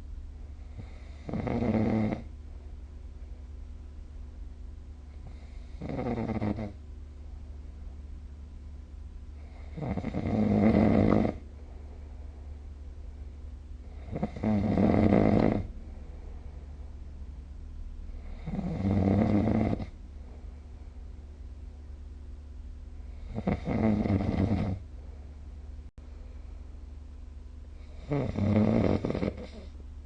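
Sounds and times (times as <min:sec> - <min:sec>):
person snoring: 0:00.7 - 0:02.3, 0:05.2 - 0:06.8, 0:09.4 - 0:11.4, 0:13.8 - 0:15.7, 0:18.2 - 0:20.0, 0:23.1 - 0:24.8, 0:27.8 - 0:29.8.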